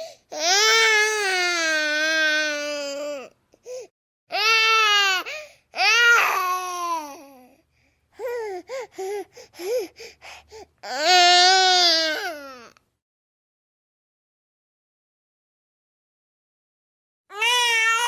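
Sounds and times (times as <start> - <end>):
baby crying: 0.0 - 3.3, 4.3 - 7.4, 10.8 - 12.7, 17.3 - 18.0.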